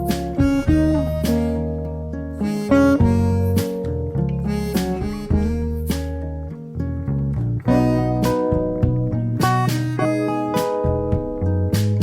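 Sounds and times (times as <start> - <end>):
steady drum beat: 0.0 - 1.6, 2.9 - 3.8, 4.7 - 6.2, 7.8 - 10.0, 10.6 - 12.0
bass line: 0.0 - 12.0
strummed acoustic guitar: 0.0 - 12.0.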